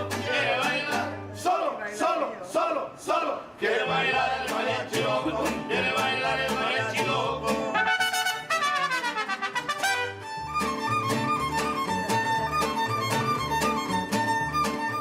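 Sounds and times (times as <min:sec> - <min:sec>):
instrumental music with bass line: 0:05.0 - 0:15.0.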